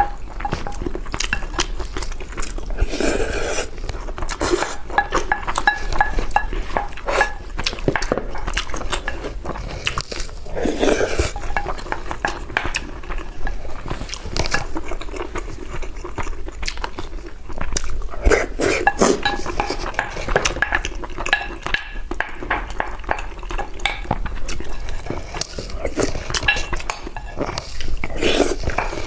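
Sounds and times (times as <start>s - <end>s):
utensils clinking against bowl: 0.0s - 2.1s, 4.4s - 13.6s, 18.4s - 29.0s
chewing: 0.0s - 29.0s.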